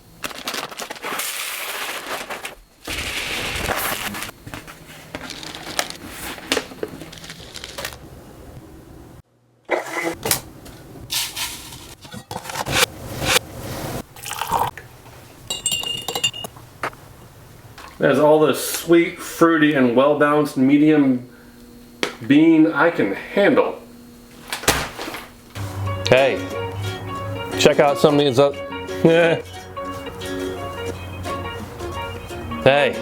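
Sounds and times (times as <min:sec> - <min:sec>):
coffee beans pouring into grinder: 0:00.2 - 0:04.3.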